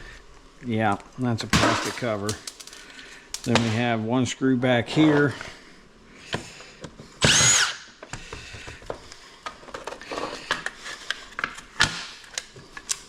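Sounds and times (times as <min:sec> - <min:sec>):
plastic and metal parts rattling: 0:01.7 - 0:02.8
power drill whine: 0:07.2 - 0:08.0.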